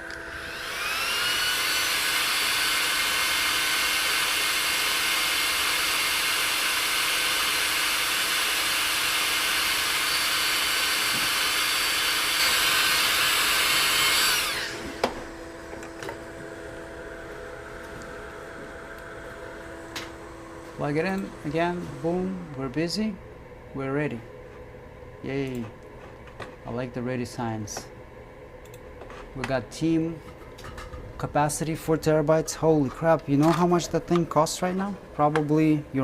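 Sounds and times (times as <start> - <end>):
hot air station fan blowing: 0.0 - 36.0.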